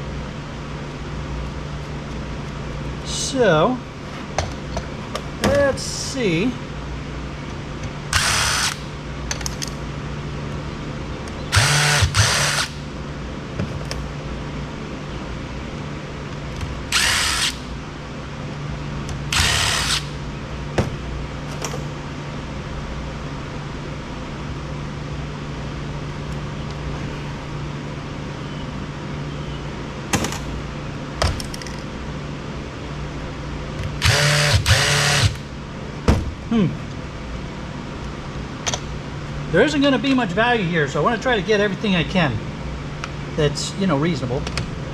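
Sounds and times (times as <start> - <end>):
steady low hum: 0.0 - 44.9
power drill running in bursts: 8.1 - 8.8, 11.5 - 12.8, 16.9 - 17.6, 19.3 - 20.1, 34.0 - 35.5.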